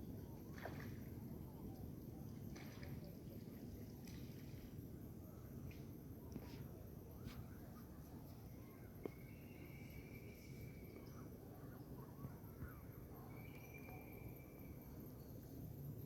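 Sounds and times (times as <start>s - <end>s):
insect trill: 0.0s - 16.0s
long level whistling tones: 6.3s - 16.0s.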